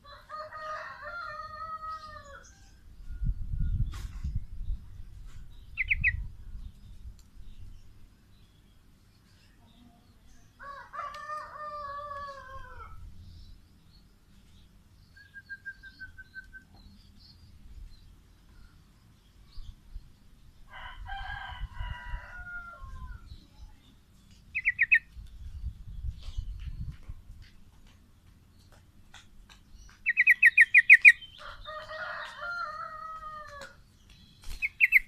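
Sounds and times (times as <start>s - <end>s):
rooster crowing: 0.0s - 2.5s, 20.7s - 23.2s, 31.4s - 33.7s
high bird chirps: 5.5s - 7.0s, 24.3s - 26.9s, 29.9s - 31.4s, 34.1s - 35.0s
songbird trilling: 5.5s - 7.7s, 24.5s - 25.2s, 29.8s - 31.4s, 34.6s - 35.0s.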